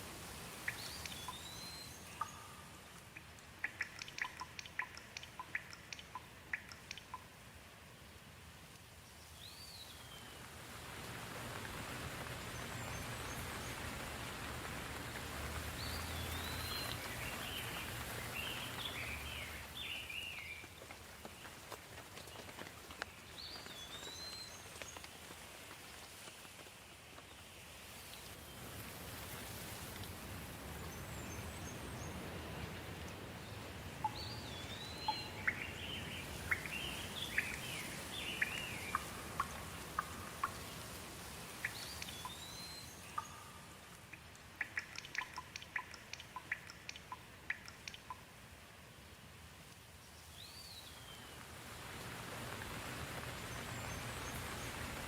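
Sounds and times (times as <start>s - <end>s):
steady rain falling: 0.0s - 55.0s
songbirds calling: 0.4s - 7.3s, 15.6s - 25.0s, 30.7s - 48.2s
bird chirps: 0.6s - 7.2s, 34.0s - 40.8s, 41.6s - 48.2s.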